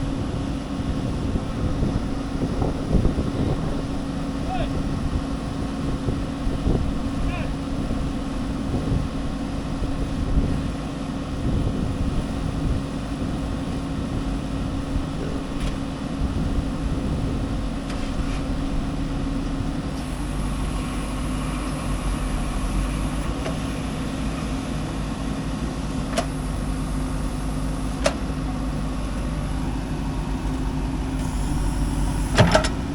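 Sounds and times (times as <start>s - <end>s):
diesel engine running: 0.0s - 32.9s
sharp clicks or knocks: 28.0s - 28.2s, 32.3s - 32.9s.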